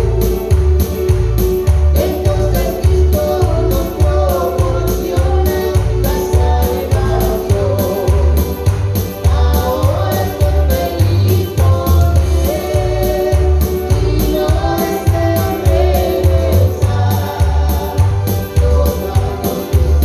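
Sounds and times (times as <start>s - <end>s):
bass pulses: 0.0s - 20.0s
duo singing praise song: 0.0s - 20.0s.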